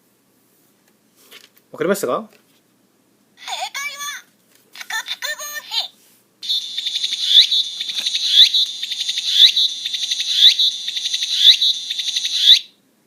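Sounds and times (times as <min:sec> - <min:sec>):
recorded cicada buzzing trill: 0:06.4 - 0:12.7.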